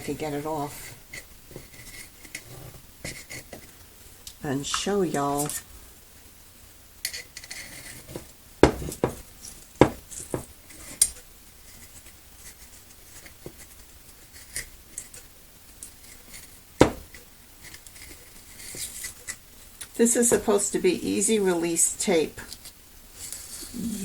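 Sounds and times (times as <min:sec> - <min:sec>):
sharp knocks: 0:08.6 - 0:09.2, 0:16.8 - 0:17.1.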